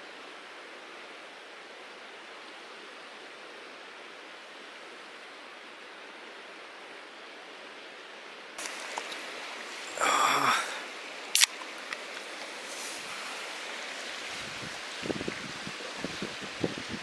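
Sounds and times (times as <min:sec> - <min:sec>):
mountain stream rushing: 0:08.6 - 0:17.0.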